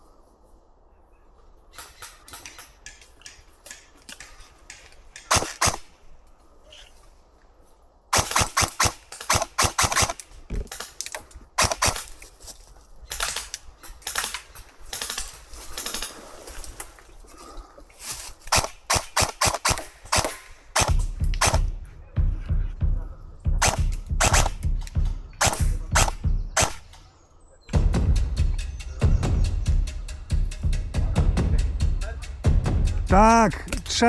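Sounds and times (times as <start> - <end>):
airsoft guns firing: 5.2 - 5.9, 8.1 - 11.0, 11.6 - 12.2, 18.5 - 21.8, 23.6 - 27.1.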